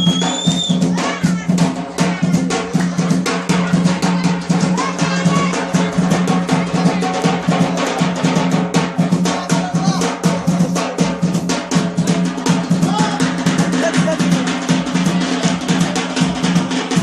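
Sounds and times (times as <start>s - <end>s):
drum beaten in rapid rhythm: 0.0s - 17.0s.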